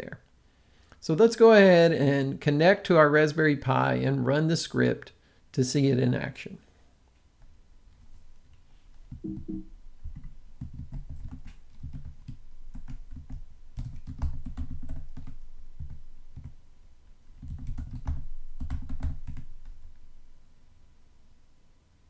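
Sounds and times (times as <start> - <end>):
typing on computer keyboard: 9.1 - 16.6, 17.4 - 19.8.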